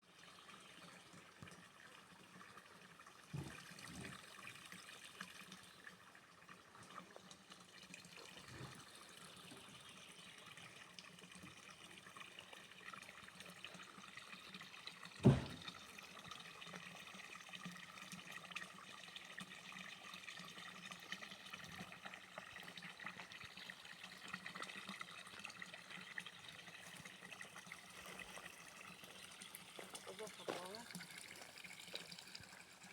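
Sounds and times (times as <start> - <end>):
stream water trickling: 0.0 - 32.9
sharp knocks: 15.2 - 15.7.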